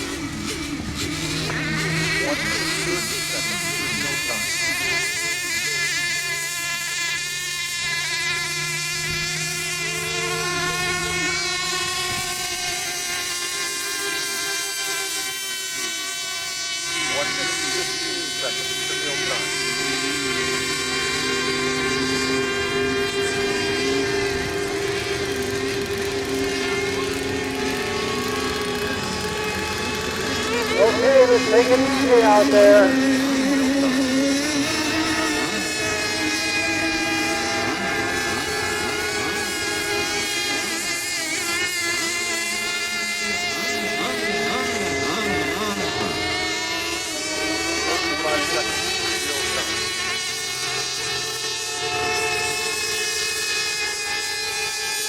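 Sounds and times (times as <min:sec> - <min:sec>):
rc boat motors whining: 0:00.0 - 0:55.0
steady low hum: 0:17.3 - 0:41.5.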